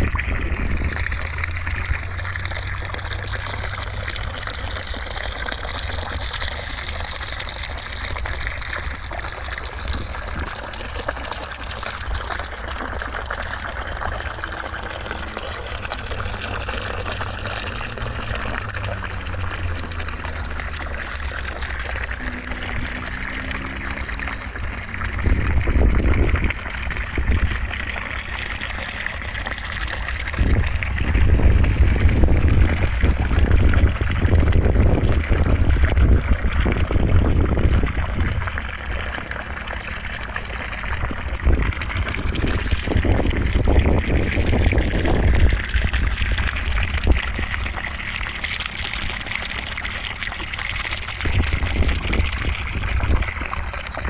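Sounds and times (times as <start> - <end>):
deep rumble: 30.3 - 38.6.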